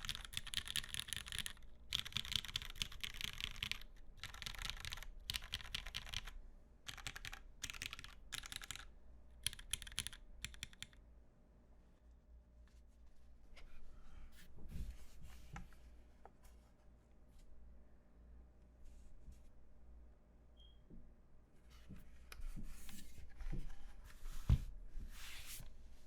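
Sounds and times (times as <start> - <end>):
mechanical keyboard typing: 0.0 - 11.0.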